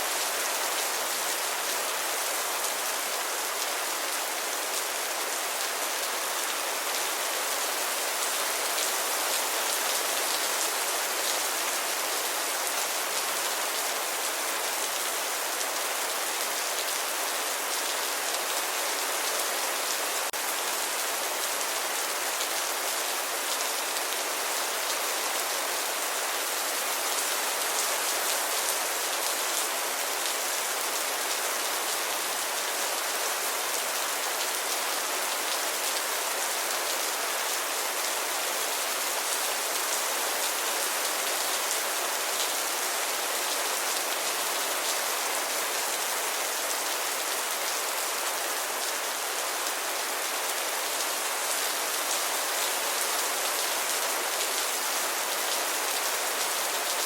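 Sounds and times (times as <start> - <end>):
steady rain: 0.0 - 57.0.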